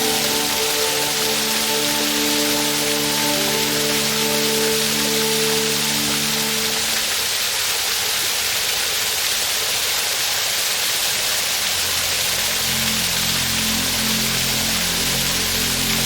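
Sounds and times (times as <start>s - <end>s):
soft background music: 0.0s - 7.2s, 11.7s - 16.0s
waterfall rushing: 0.0s - 16.0s.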